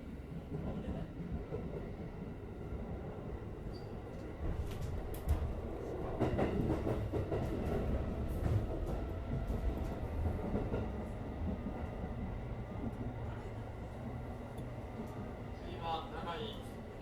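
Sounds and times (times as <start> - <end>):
train wheels rumbling on rail: 0.0 - 17.0.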